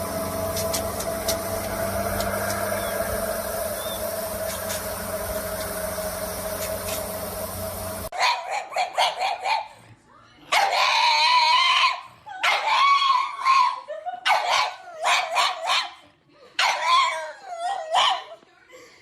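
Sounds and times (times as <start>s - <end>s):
dog howling: 0.0s - 5.9s
dog yipping: 8.2s - 9.7s, 10.5s - 16.0s, 16.6s - 18.4s.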